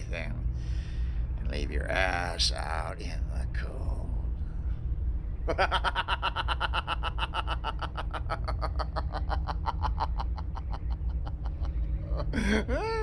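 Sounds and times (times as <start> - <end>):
man laughing: 5.5 - 13.0.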